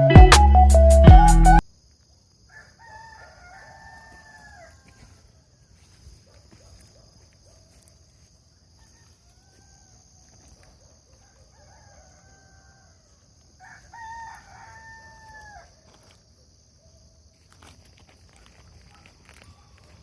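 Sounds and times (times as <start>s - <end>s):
roosters crowing: 2.4s - 5.9s, 8.7s - 10.5s, 11.2s - 16.0s, 18.8s - 20.0s.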